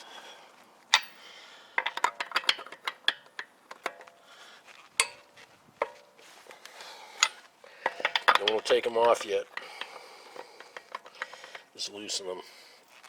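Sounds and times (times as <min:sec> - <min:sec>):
lug wrench clinking on nuts: 0:00.9 - 0:04.2, 0:05.0 - 0:06.2, 0:07.2 - 0:11.8.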